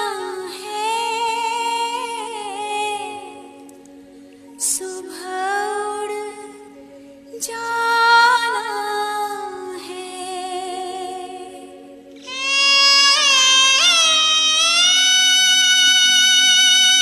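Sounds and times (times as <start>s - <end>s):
person singing long wavering notes: 12.2s - 17.0s
steady drone: 12.2s - 17.0s.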